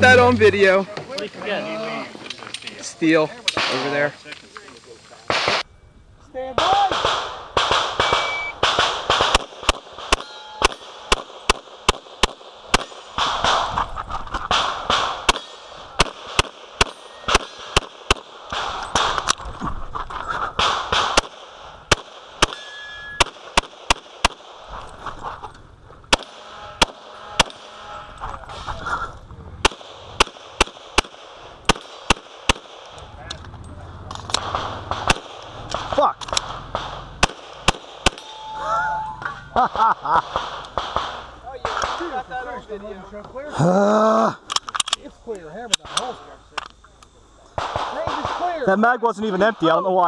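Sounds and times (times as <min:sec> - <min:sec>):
pistol shots: 0:05.3 - 0:05.6, 0:06.6 - 0:13.8, 0:14.5 - 0:19.3, 0:20.6 - 0:24.7, 0:26.1 - 0:27.7, 0:29.6 - 0:33.0, 0:34.2 - 0:38.4, 0:40.2 - 0:42.2, 0:47.6 - 0:48.6
shot timer beep: 0:08.0 - 0:08.6.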